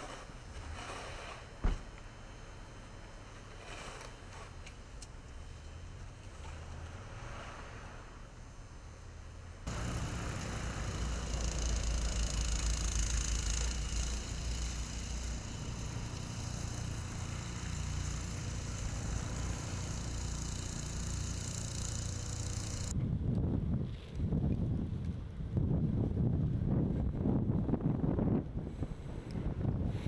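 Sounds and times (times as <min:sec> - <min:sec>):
vehicle engine running: 0:09.7 - 0:22.9.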